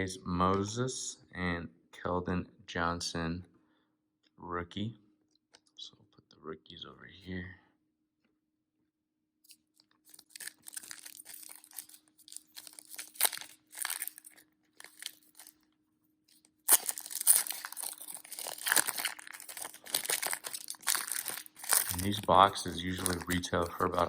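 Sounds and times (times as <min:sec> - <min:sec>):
wrapper tearing and crinkling: 0:09.5 - 0:15.6, 0:16.3 - 0:24.0.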